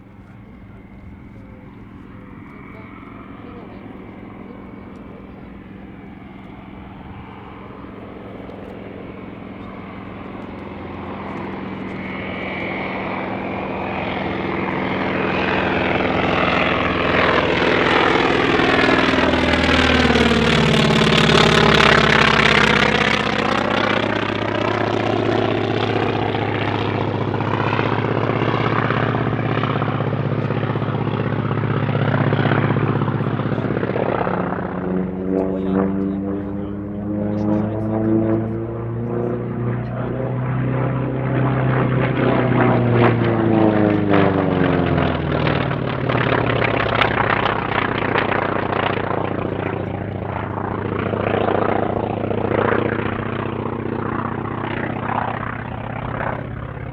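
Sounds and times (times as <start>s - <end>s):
propeller plane radial engine: 0.0s - 56.9s.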